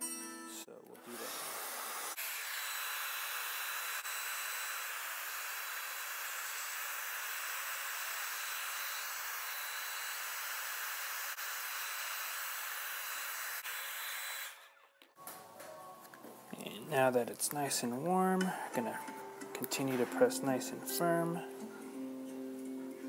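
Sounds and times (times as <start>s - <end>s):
hair dryer blowing: 1.0s - 14.8s.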